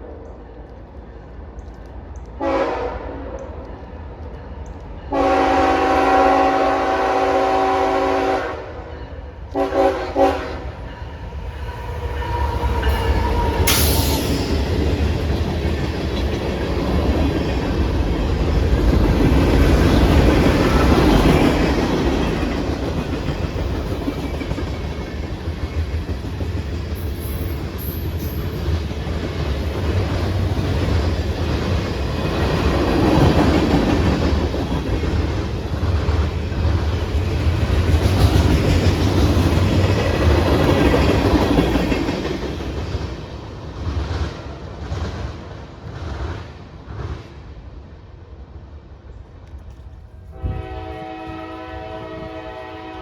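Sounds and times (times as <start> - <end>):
train rumbling past: 0.0 - 53.0
train horn: 2.4 - 3.5, 5.1 - 11.0, 50.3 - 53.0
train wheel clatter: 9.4 - 47.4.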